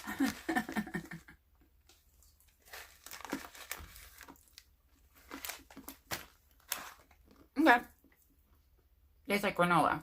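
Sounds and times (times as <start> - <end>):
plastic packaging crinkling: 0.0 - 1.2, 1.9 - 7.7.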